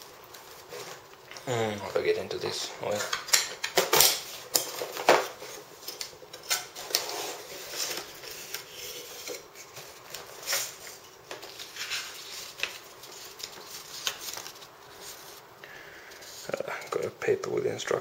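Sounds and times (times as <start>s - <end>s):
hands rummaging through packaging: 2.8s - 15.5s.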